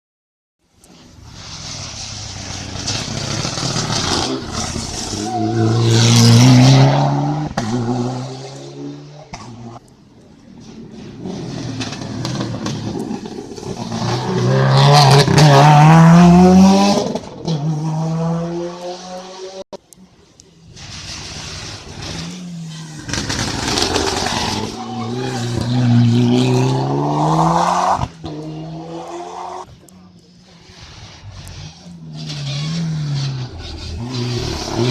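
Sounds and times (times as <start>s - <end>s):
racing car engines accelerating: 10.6s - 19.6s.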